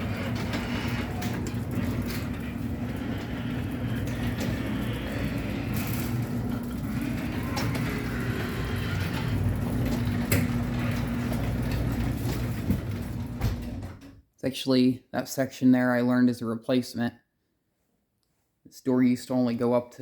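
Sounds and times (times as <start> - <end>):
garage door opener motor hum: 0.0 - 14.2.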